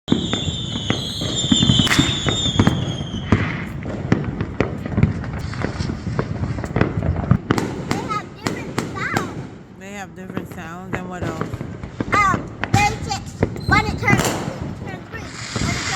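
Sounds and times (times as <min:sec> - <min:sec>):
high whistle falling in pitch: 0:00.1 - 0:03.4
sharp bangs and cracks: 0:00.1 - 0:15.9.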